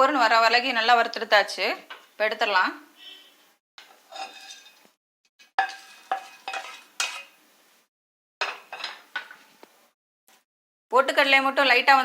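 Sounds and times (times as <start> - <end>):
metal spoon scraping a pan: 3.1 - 7.4.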